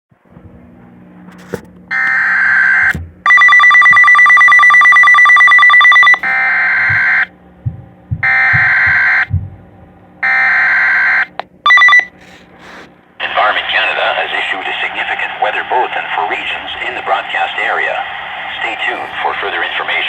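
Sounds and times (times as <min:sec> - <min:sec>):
pulsing two-tone beep: 0:03.4 - 0:07.3, 0:08.2 - 0:09.3.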